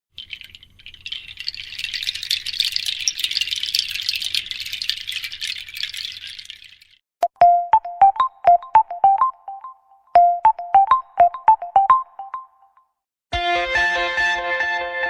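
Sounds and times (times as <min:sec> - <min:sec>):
fast rattling: 0:00.1 - 0:07.0.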